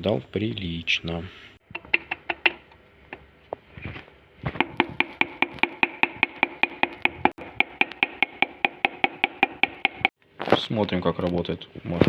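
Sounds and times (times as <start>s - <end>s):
hand tool metallic clicking: 4.6s - 10.1s.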